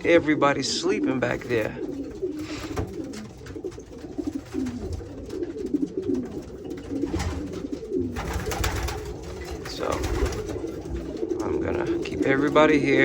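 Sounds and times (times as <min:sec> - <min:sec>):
pigeons cooing: 0:00.0 - 0:13.0.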